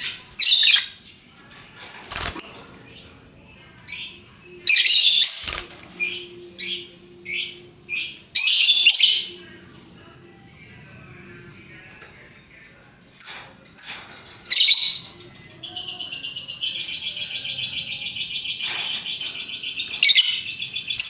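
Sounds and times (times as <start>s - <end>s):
rapid bird chatter: 0.0s - 1.2s, 3.9s - 21.0s.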